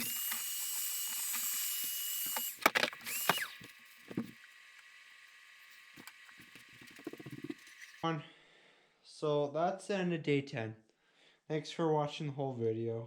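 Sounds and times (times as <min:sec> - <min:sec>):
power drill whining: 0:00.0 - 0:08.0.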